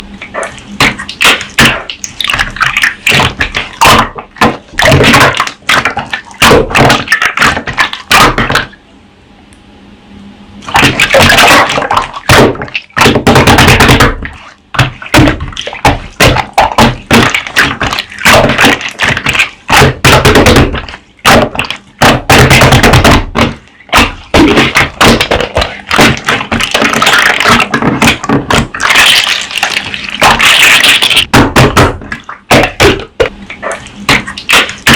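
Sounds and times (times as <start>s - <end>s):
slime crackling and popping: 10.8s - 31.3s.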